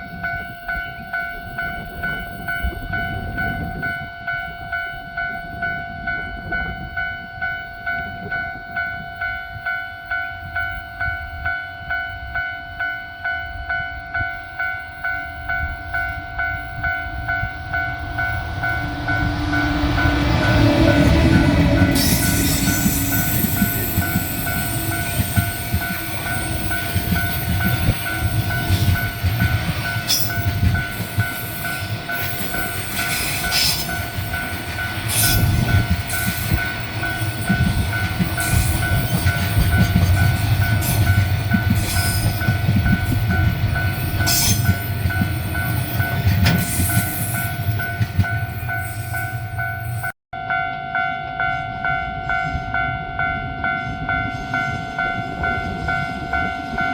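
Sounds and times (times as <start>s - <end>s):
level-crossing alarm bell ringing: 0.0s - 56.9s
train wheels rumbling and clicking: 14.0s - 50.1s.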